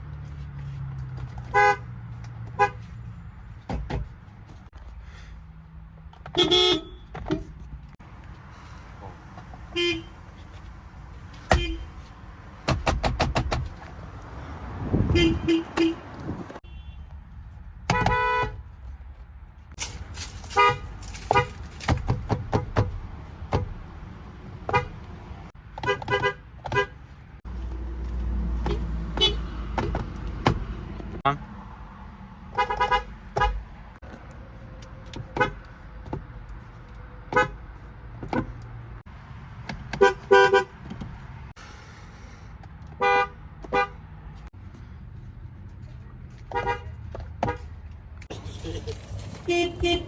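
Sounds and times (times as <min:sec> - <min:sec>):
car horns honking: 0:01.4 - 0:01.9, 0:02.5 - 0:02.8, 0:06.3 - 0:07.4, 0:09.7 - 0:10.4, 0:11.4 - 0:12.1, 0:15.0 - 0:17.2, 0:17.9 - 0:18.6, 0:19.8 - 0:21.7, 0:24.6 - 0:25.0, 0:25.8 - 0:27.0, 0:28.6 - 0:29.7, 0:32.5 - 0:33.7, 0:35.2 - 0:35.7, 0:37.3 - 0:37.6, 0:39.9 - 0:40.8, 0:43.0 - 0:44.0, 0:46.5 - 0:47.7, 0:48.3 - 0:50.0.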